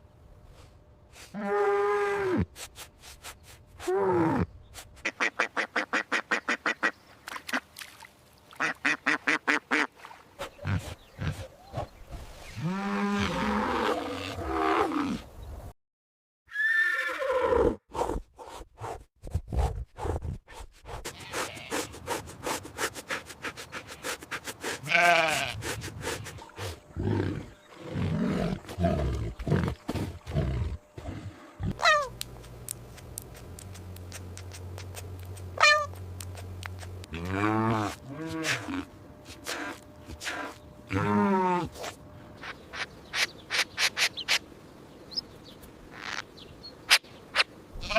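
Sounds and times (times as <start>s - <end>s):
horse whinnying: 16.5s - 17.8s
steady low hum: 20.9s - 45.3s
animal cries: 31.7s - 32.1s, 35.6s - 36.0s.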